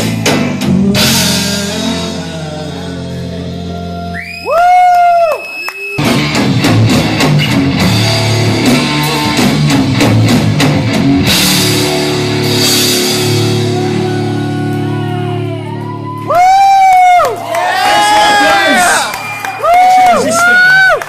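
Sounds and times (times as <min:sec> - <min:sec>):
live rock band playing: 0:00.0 - 0:04.1, 0:06.0 - 0:20.3
electric guitar: 0:00.0 - 0:04.2, 0:06.0 - 0:20.6
rapid drum hits: 0:06.0 - 0:14.2.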